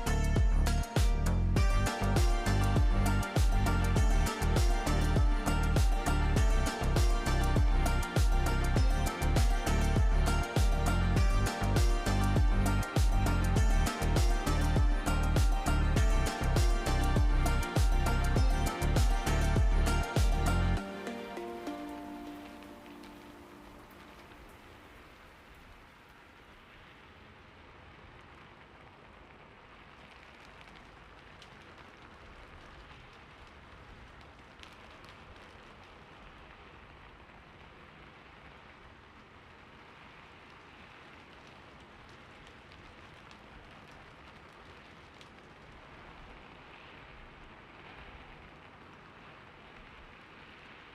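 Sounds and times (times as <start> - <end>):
steady rain falling: 0.0 - 50.9.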